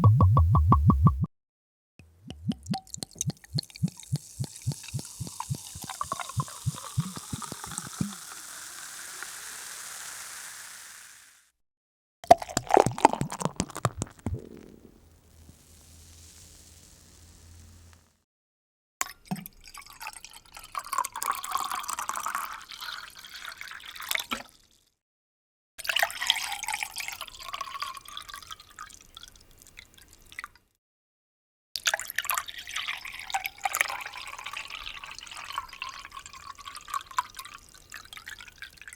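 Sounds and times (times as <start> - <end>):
drink pouring into a glass: 2.3 - 11.4, 12.2 - 14.9, 19.7 - 23.8, 33.8 - 38.4.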